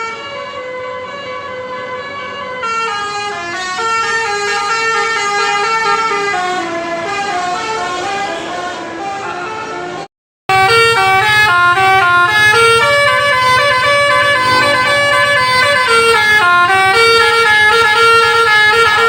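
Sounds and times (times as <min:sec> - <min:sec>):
musical horn playing a tune: 0:02.6 - 0:09.7, 0:10.5 - 0:19.0
bus engine running: 0:09.8 - 0:19.0.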